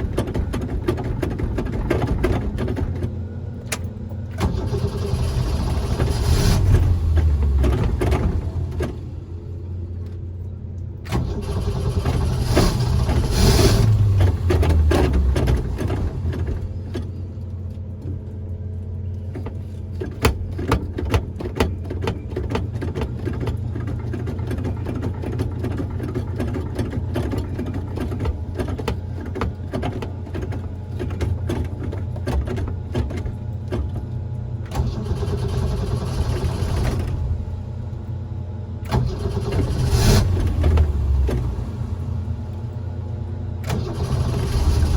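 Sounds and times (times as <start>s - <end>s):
engine ticks and pops: 0.0s - 9.3s, 10.0s - 42.9s
car engine revving: 4.4s - 9.1s, 11.1s - 16.9s, 38.9s - 42.5s, 43.6s - 44.9s.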